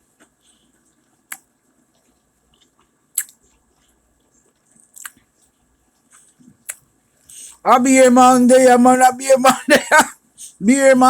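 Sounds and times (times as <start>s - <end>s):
chewing fried chicken: 0.0s - 7.6s.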